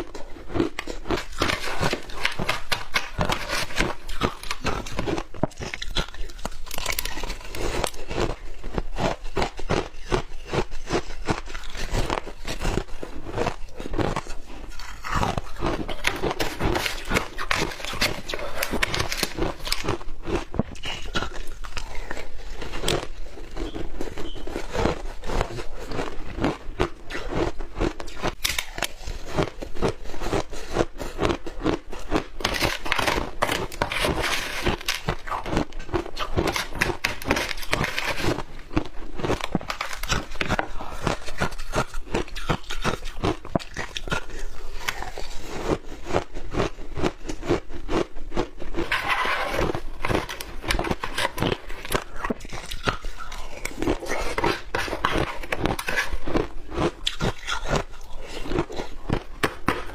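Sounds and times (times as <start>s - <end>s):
chewing crunchy shaved ice: 0.0s - 59.9s.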